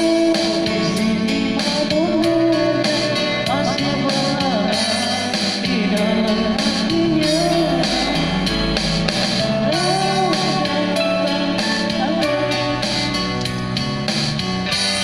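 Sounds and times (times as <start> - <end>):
guitar: 0.0 - 15.0
steady drum beat: 0.0 - 15.0.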